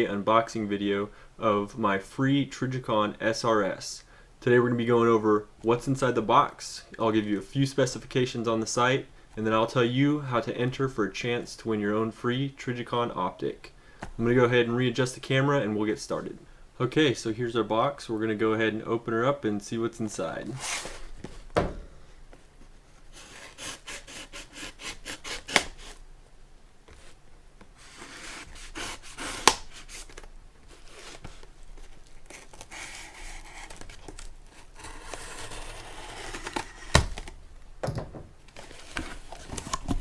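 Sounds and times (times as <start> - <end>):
cardboard scraping and rustling: 20.2 - 26.0, 26.9 - 27.2, 27.8 - 37.4, 38.4 - 40.0
tape tearing: 23.2 - 26.0, 27.8 - 37.4.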